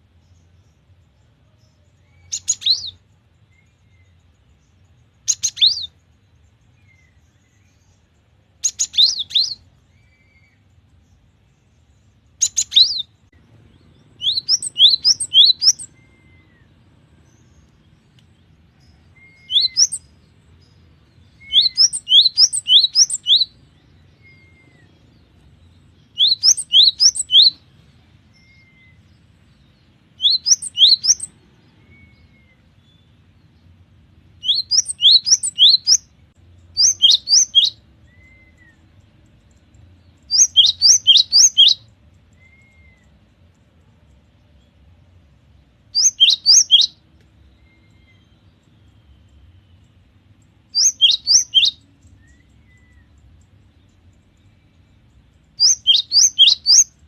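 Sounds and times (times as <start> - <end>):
soft bird call notes: 14.0 - 27.7, 30.2 - 33.1, 34.4 - 36.1, 36.7 - 43.2, 45.9 - 50.0, 50.7 - 57.0
bird singing high notes: 14.2 - 16.7, 19.2 - 20.1, 46.0 - 47.0, 50.8 - 53.1, 55.6 - 56.9.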